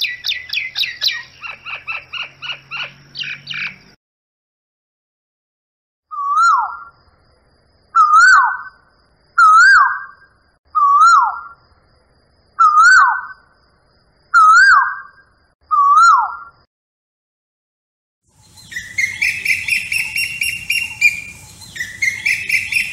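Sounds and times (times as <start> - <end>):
bird whistled call: 0.0 - 3.8, 6.1 - 6.9, 8.0 - 8.8, 9.4 - 11.6, 12.6 - 13.4, 14.4 - 16.5, 18.4 - 22.9.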